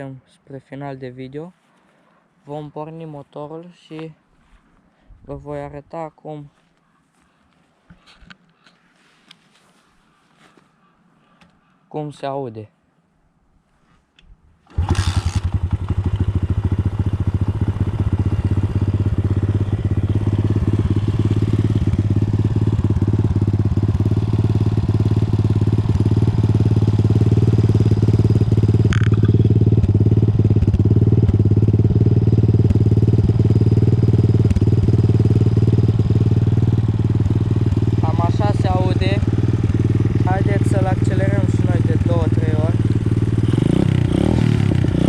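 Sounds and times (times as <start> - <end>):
motorcycle engine starting and idling: 14.6 - 45.0.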